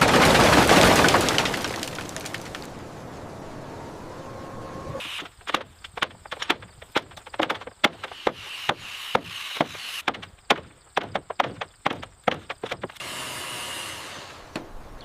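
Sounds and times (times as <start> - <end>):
wooden knocks and taps: 5.4 - 8.4, 10.1 - 13.0.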